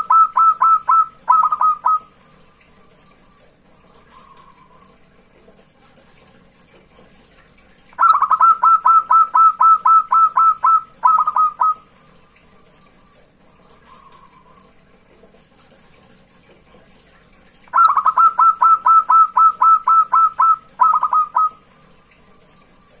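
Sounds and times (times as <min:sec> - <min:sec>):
dove cooing: 0:00.0 - 0:02.1, 0:08.0 - 0:11.8, 0:17.7 - 0:21.7.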